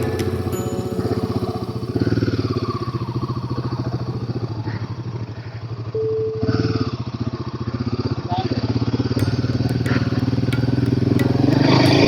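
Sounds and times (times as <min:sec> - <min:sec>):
brief steady tone: 0:05.9 - 0:07.0.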